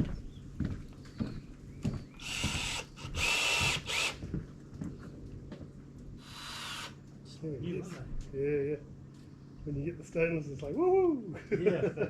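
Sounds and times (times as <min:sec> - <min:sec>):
cordless drill whining: 0:02.2 - 0:04.2, 0:06.2 - 0:07.0.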